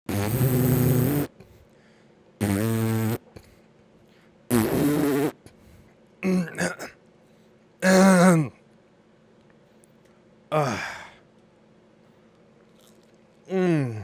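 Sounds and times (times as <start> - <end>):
pitched fart noises: 0.1 - 1.4, 2.4 - 3.4, 4.5 - 5.5.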